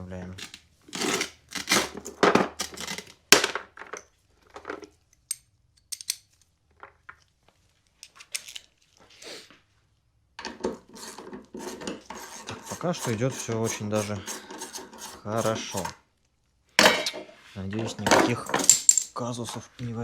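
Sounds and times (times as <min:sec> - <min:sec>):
metal tools clinking and knocking: 0:03.8 - 0:07.0, 0:16.8 - 0:19.7.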